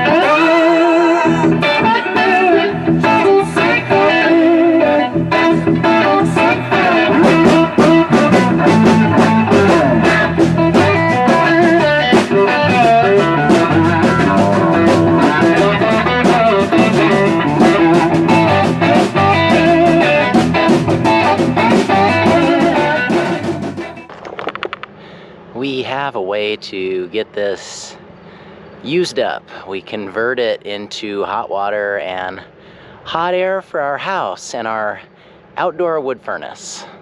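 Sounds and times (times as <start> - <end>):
blues-rock music with electric guitar: 0.0 - 25.0.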